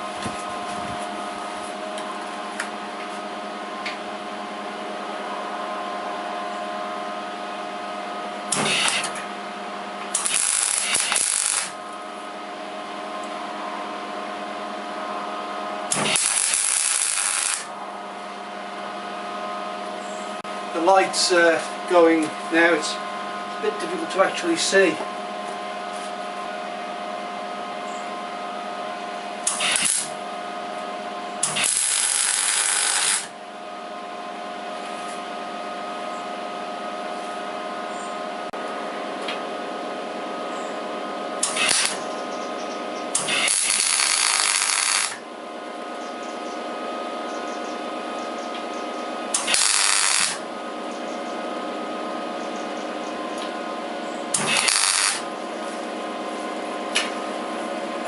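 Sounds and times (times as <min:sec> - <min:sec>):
welder machine hum: 0:00.0 - 0:58.0
welding crackle: 0:08.6 - 0:09.2, 0:10.1 - 0:11.8, 0:15.9 - 0:17.7, 0:29.5 - 0:30.1, 0:31.4 - 0:33.3, 0:41.4 - 0:42.0, 0:43.2 - 0:45.2, 0:49.3 - 0:50.4, 0:54.4 - 0:55.2.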